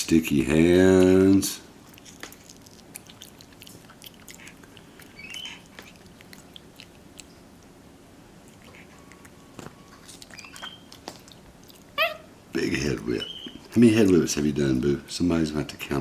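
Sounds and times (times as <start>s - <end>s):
monkey chewing wetly: 1.8s - 12.3s
faint high squeaks: 8.8s - 11.0s.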